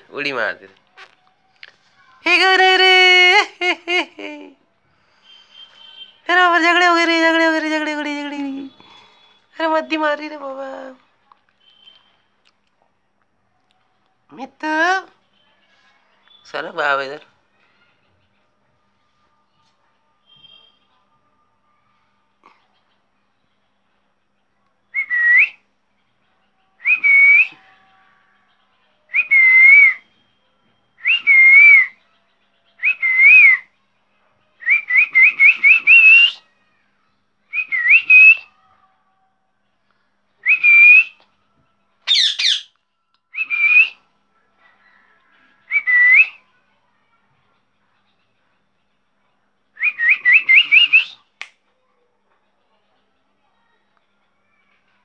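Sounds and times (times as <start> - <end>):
parrot whistling calls: 42.1 - 42.7, 49.8 - 51.2.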